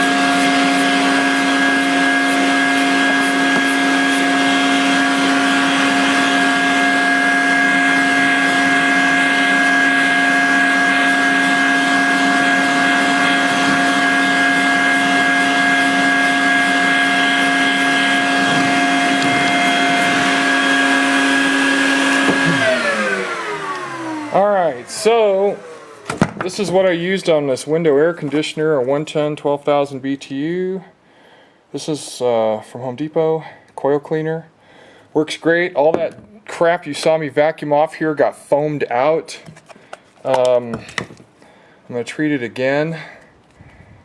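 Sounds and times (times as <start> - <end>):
vacuum cleaner motor whining: 0.0 - 27.3.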